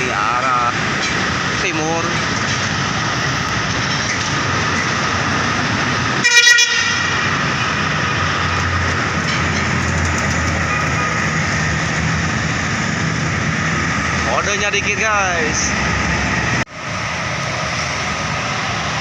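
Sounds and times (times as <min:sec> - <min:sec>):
heavy engine rumble: 0:00.0 - 0:19.0
traffic noise: 0:00.0 - 0:19.0
bus horn toot: 0:06.2 - 0:07.4, 0:10.6 - 0:11.5.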